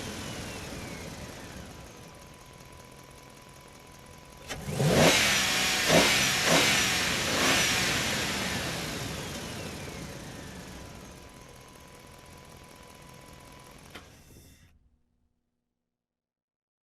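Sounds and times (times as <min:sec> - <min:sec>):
truck engine revving: 0:04.4 - 0:11.0.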